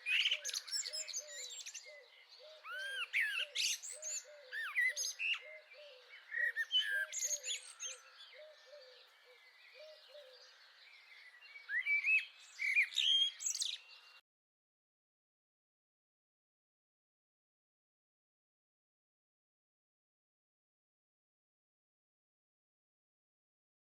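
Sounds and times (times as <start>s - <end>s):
blackbird singing: 0.0s - 14.2s
other birds chirping: 0.0s - 14.2s.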